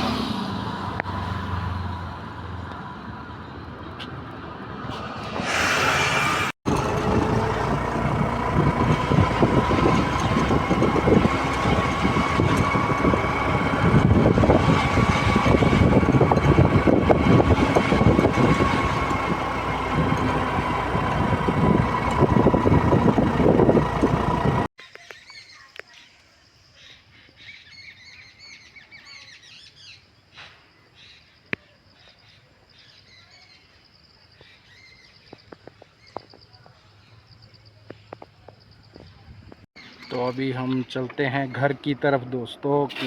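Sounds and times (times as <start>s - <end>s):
scooter engine and tyre noise: 0.0s - 24.7s
steady whine: 5.7s - 24.7s
wind buffeting microphone: 6.0s - 24.7s.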